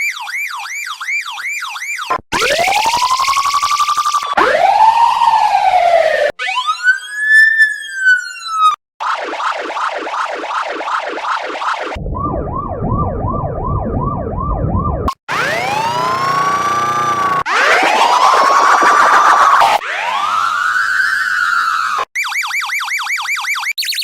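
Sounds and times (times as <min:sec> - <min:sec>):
police siren wailing: 0:00.0 - 0:23.7
police siren yelping: 0:00.0 - 0:24.0
low rumble: 0:12.0 - 0:15.1.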